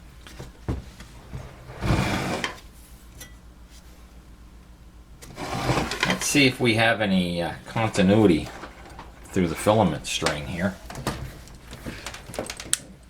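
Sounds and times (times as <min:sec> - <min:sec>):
low steady hum: 0:00.0 - 0:13.0
scraping shuffle: 0:00.3 - 0:03.1, 0:05.3 - 0:06.6, 0:07.6 - 0:12.4.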